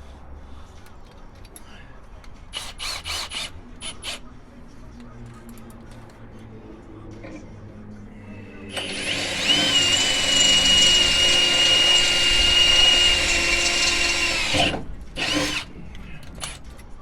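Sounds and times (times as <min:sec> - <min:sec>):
drill boring into metal: 0:02.5 - 0:04.2, 0:08.7 - 0:15.7.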